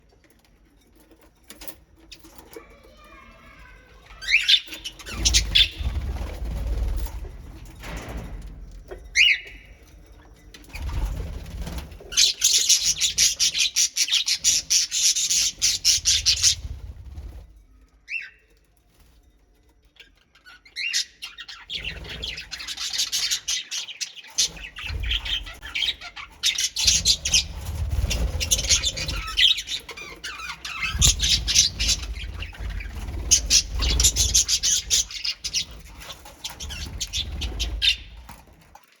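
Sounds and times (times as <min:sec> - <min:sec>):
birds chirping and squawking: 0:00.3 - 0:19.2, 0:19.8 - 0:38.9
wings flapping: 0:04.2 - 0:08.4, 0:10.6 - 0:17.5, 0:24.3 - 0:38.9.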